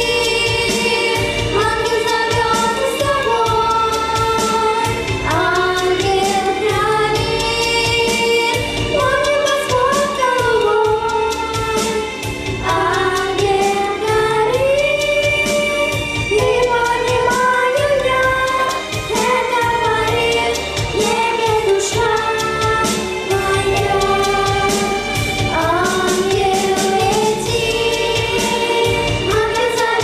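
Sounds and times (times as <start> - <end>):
instrumental accompaniment: 0.0 - 30.0
woman singing: 0.0 - 30.0.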